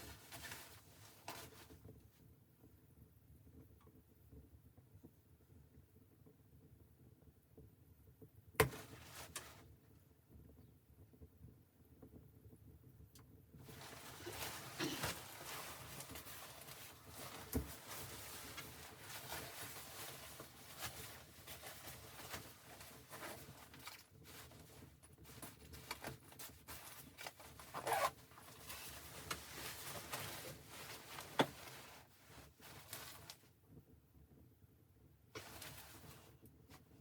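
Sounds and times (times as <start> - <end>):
fabric rustling: 0.0 - 1.8, 13.6 - 33.5, 35.4 - 37.0.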